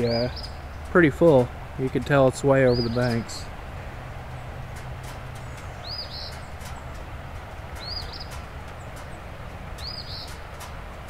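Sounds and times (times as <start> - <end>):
flooded creek rushing: 0.0 - 11.0.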